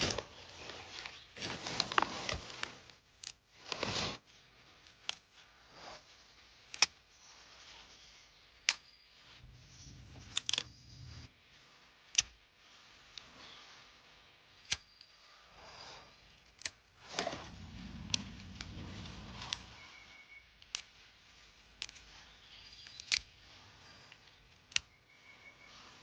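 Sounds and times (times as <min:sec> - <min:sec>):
plant shoots snapping: 0:10.2 - 0:10.7
leaves rustling: 0:17.0 - 0:20.4, 0:21.0 - 0:26.0.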